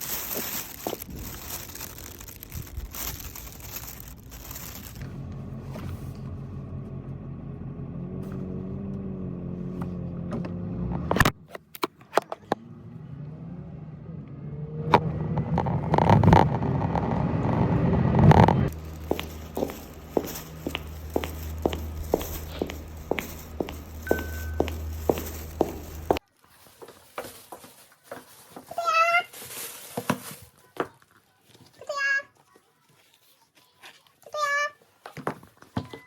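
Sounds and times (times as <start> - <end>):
car engine pitch rising: 1.8 - 11.2, 12.6 - 26.2.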